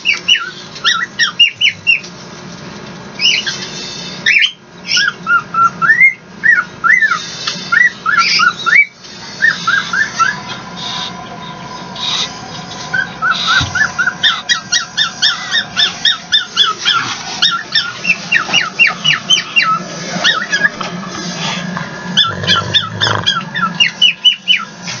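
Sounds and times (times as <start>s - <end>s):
dog whimpering squeakily: 4.2s - 10.4s, 22.2s - 24.6s.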